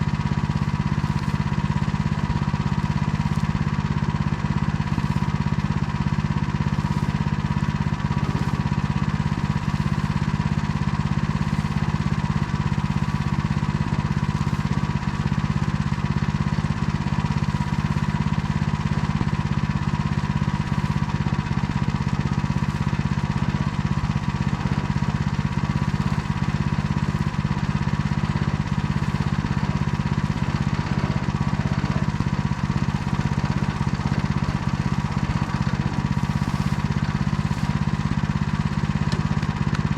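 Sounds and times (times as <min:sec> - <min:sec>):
tiller engine running: 0:00.0 - 0:39.9.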